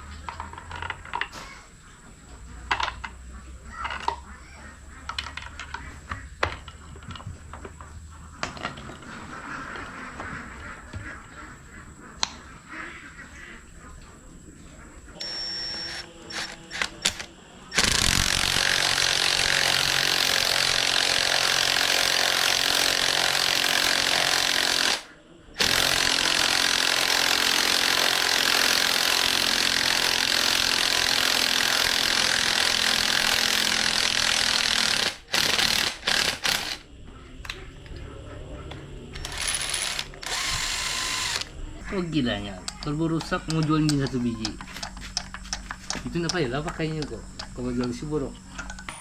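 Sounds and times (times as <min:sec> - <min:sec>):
power tool running hard: 0:15.7 - 0:36.8, 0:39.2 - 0:41.5.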